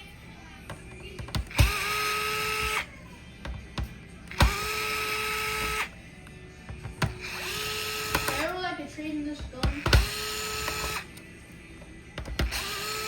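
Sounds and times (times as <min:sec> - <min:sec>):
electric screwdriver motor whine: 0:01.3 - 0:03.0, 0:04.3 - 0:05.9, 0:07.0 - 0:08.5, 0:09.6 - 0:11.2, 0:12.3 - 0:13.0.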